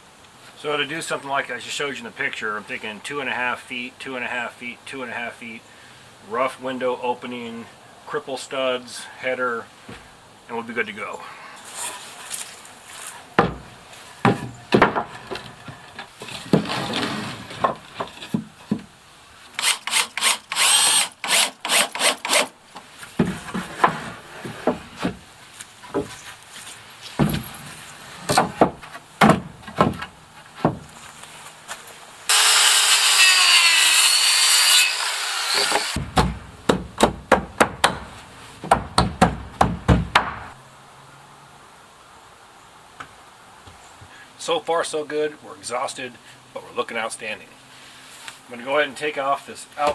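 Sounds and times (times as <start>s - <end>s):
sharp knocks on timber: 13.4s - 15.5s, 23.2s - 25.2s, 25.9s - 26.2s, 27.2s - 27.5s, 28.3s - 30.9s, 36.0s - 40.6s
power saw cutting wood: 19.6s - 22.5s, 32.3s - 36.3s.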